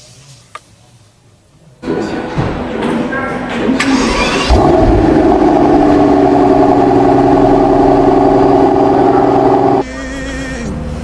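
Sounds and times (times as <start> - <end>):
car engine running: 3.9 - 9.8.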